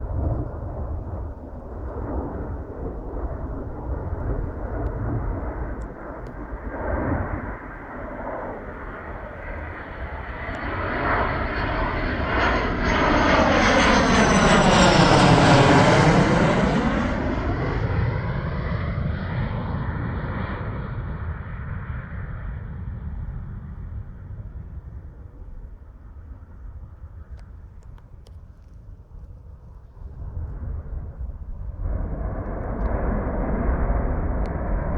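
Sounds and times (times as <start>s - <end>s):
high jet whine: 0.0s - 18.8s
jet aircraft passing: 0.0s - 34.9s.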